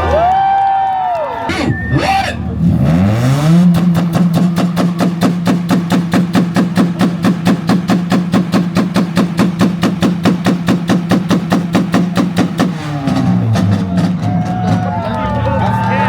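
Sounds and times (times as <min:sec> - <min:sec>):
car engine on rev limiter: 0:01.6 - 0:16.0
exhaust pops and bangs: 0:03.4 - 0:16.0.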